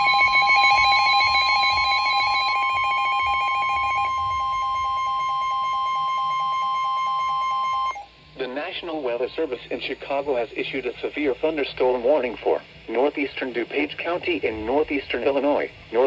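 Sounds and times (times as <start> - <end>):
pulsing radio beeps: 0.0 - 8.0
steady alarm tone: 0.0 - 8.0.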